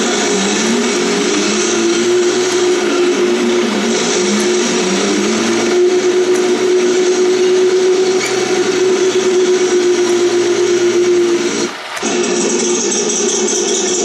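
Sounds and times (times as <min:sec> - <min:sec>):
toy tank engine sound effect: 0:00.0 - 0:14.0.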